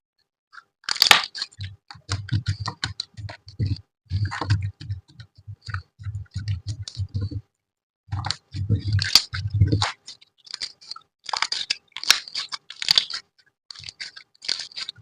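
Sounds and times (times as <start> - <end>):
slime squelch: 8.1 - 15.0.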